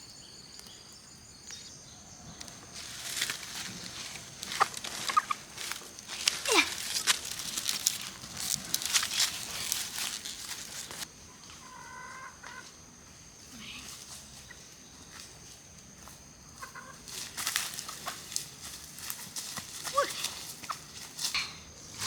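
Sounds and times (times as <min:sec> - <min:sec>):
chickens clucking: 0:02.2 - 0:06.4, 0:07.1 - 0:12.7, 0:16.6 - 0:17.2
clicks and rustles: 0:02.5 - 0:11.0.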